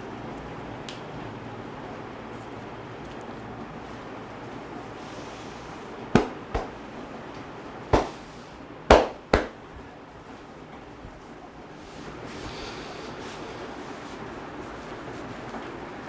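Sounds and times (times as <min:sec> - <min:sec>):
hands slapping head: 0:06.2 - 0:06.8, 0:07.9 - 0:08.3, 0:08.9 - 0:09.6.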